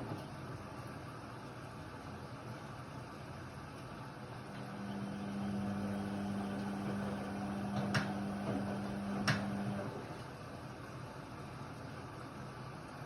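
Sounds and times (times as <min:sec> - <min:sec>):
washer-dryer whooshing: 0:04.4 - 0:10.4.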